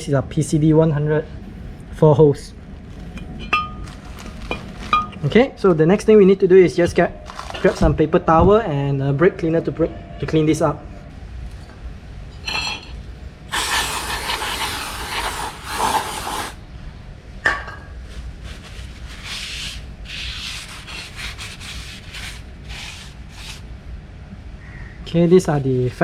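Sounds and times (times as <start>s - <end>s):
aerosol spray hissing: 13.5s - 16.6s
paper towel wiping metal: 13.5s - 16.6s, 18.0s - 23.7s.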